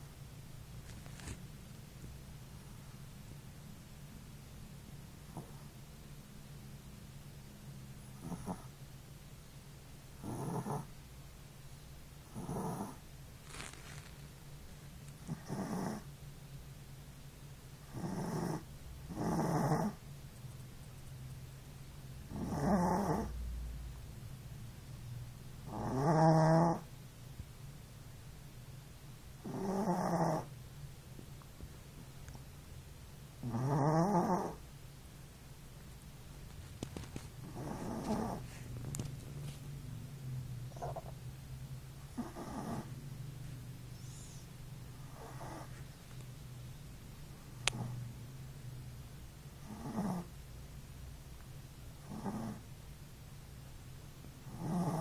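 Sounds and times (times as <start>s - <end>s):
low steady hum: 0.0s - 55.0s
puppy snoring: 5.1s - 5.8s, 8.1s - 8.8s, 10.2s - 11.0s, 12.2s - 14.1s, 15.1s - 16.2s, 17.8s - 20.0s, 22.2s - 23.4s, 25.6s - 26.9s, 29.4s - 30.6s, 33.4s - 34.7s, 37.0s - 39.6s, 40.7s - 41.2s, 42.0s - 46.0s, 47.5s - 48.1s, 49.5s - 50.4s, 52.0s - 52.7s, 54.4s - 55.0s.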